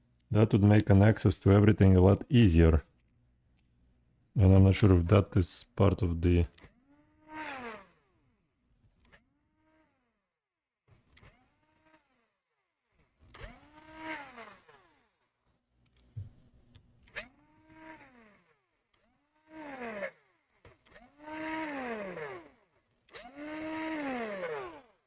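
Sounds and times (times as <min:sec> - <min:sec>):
electric screwdriver motor whirring: 0:13.3 - 0:15.0.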